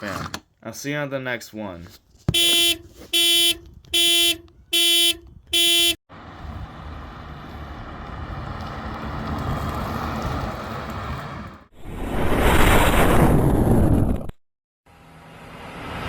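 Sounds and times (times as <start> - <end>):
horn-like beeps: 2.4 - 6.0.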